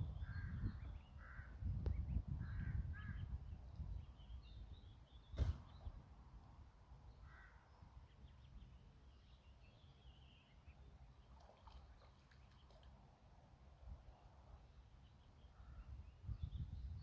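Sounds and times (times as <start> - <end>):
faint bird chirps: 14.4 - 17.0.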